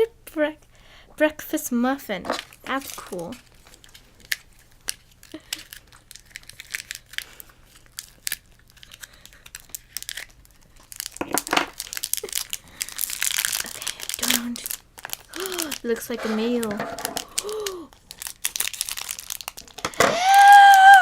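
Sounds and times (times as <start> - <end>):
plastic packaging crinkling and tearing: 2.2 - 21.0.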